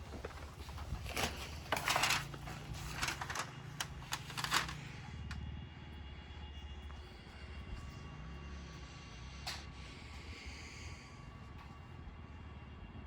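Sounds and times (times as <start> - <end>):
scraping with sharp clicks: 0.0 - 4.9.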